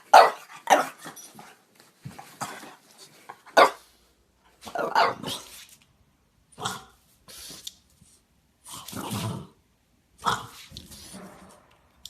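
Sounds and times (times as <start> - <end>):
dog barking: 0.1 - 1.0, 3.6 - 3.8, 4.7 - 5.4.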